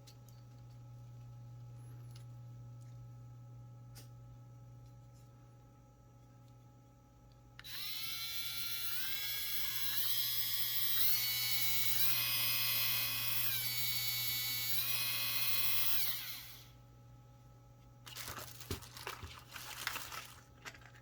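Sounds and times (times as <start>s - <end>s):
rotary tool whining: 7.6s - 16.8s.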